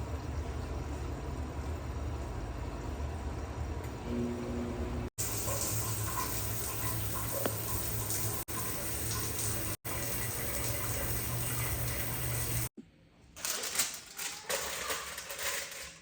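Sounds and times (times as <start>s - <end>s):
water running: 5.0s - 12.7s.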